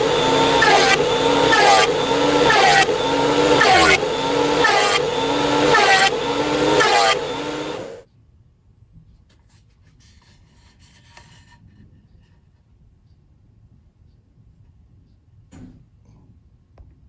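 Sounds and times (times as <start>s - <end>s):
thickness planer cutting: 0.0s - 8.0s.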